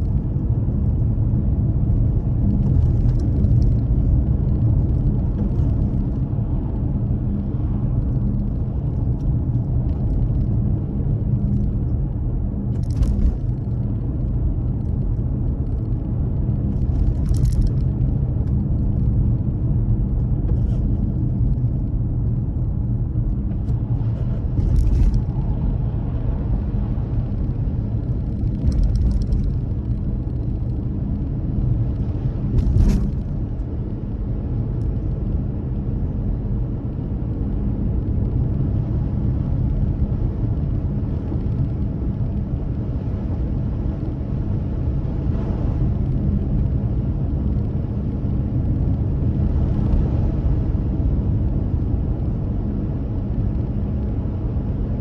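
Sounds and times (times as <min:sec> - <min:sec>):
car engine and tyres rumbling: 0:00.0 - 0:55.0.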